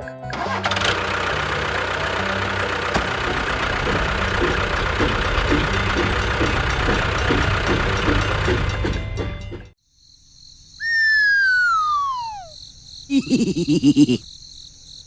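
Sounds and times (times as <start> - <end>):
small motor running: 0.4 - 8.8.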